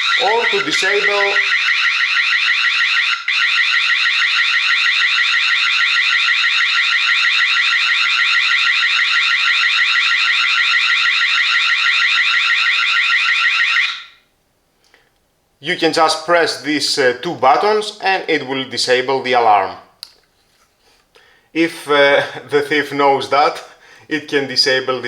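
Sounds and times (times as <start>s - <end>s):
alarm siren rising sweep: 0.0s - 14.2s.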